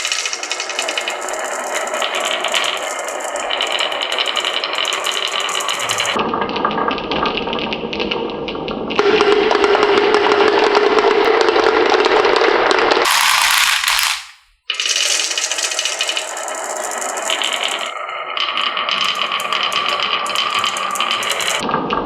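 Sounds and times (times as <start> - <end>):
marbles rattling down wooden run: 0.0 - 6.2, 13.0 - 21.6
steady ringing tone: 0.0 - 6.2, 14.9 - 21.6.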